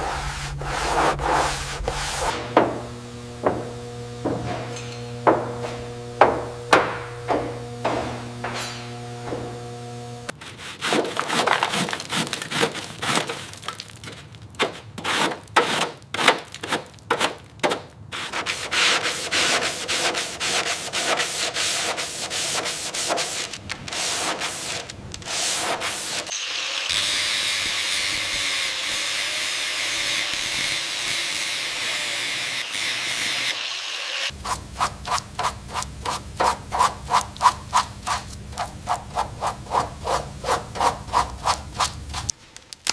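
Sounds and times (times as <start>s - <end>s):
sanding strokes: 0.0s - 4.7s, 18.1s - 42.3s
low hum: 0.0s - 10.3s.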